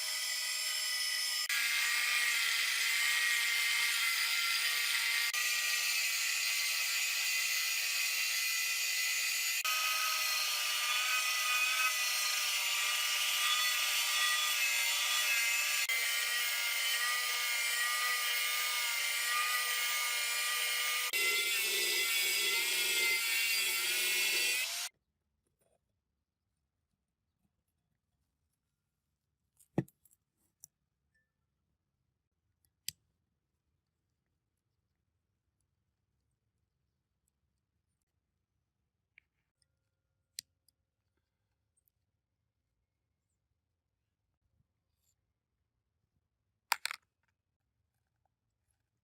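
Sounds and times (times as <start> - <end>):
power tool whining: 0.0 - 24.9.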